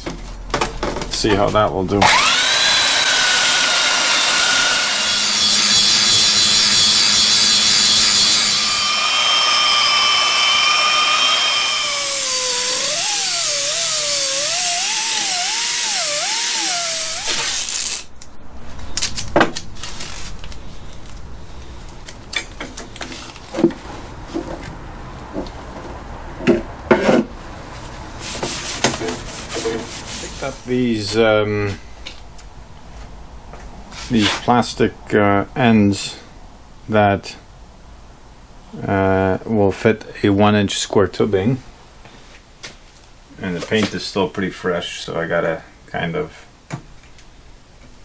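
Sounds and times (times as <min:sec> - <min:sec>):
power tool sanding steel: 0:02.0 - 0:17.8.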